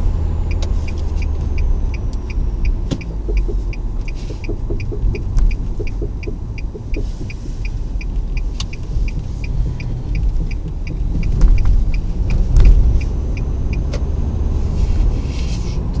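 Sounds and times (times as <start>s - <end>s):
car road and engine rumble: 0.0s - 16.0s
rhythmic knocking ticks: 0.5s - 14.1s.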